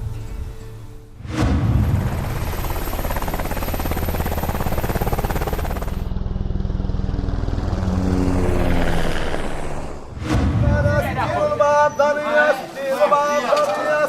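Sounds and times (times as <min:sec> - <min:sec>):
turbine noise: 0:01.2 - 0:12.1
helicopter rotor chop: 0:01.3 - 0:11.8.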